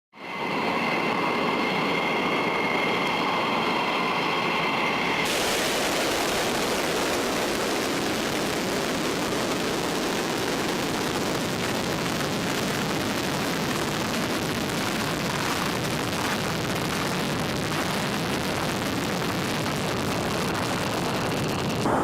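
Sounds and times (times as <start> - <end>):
fighter jet engines whining: 0.2 - 22.0.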